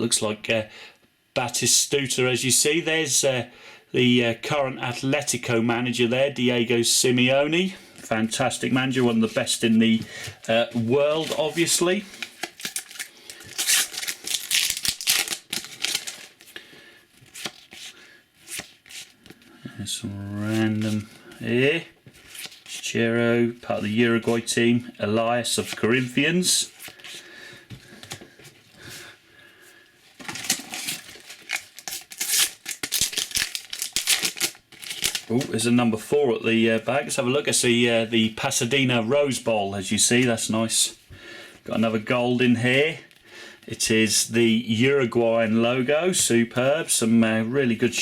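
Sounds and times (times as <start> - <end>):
paper and foil rustling: 11.1 - 16.5, 30.2 - 35.5
sticker packets crinkling: 11.1 - 16.5, 30.2 - 35.5.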